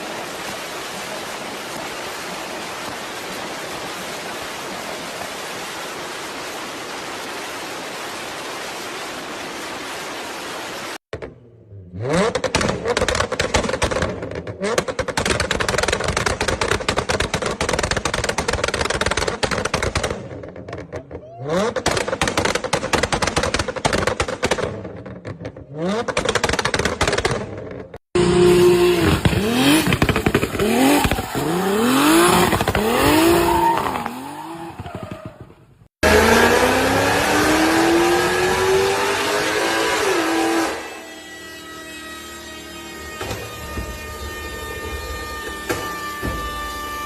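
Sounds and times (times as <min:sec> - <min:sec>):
car exhausts popping and crackling: 0:11.1 - 0:36.5
car engines revving: 0:11.3 - 0:17.7, 0:24.6 - 0:35.4, 0:36.0 - 0:45.7.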